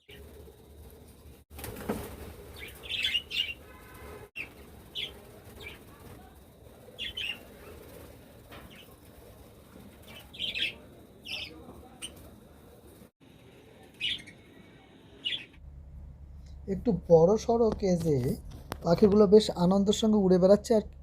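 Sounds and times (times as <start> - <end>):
budgerigars chirping: 2.6 - 3.6, 10.2 - 12.2, 15.2 - 15.6
steady low hum: 13.2 - 21.0.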